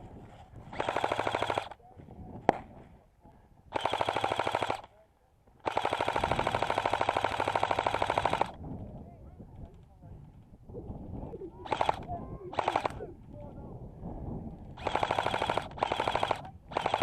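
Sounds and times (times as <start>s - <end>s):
airsoft rifle firing bursts: 0.7s - 1.8s, 3.7s - 4.9s, 5.6s - 8.6s, 11.6s - 13.0s, 14.8s - 17.0s.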